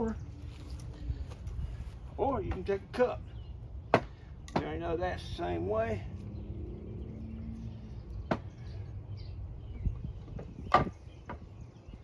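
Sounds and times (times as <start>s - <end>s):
bamboo knocking: 3.9s - 4.8s.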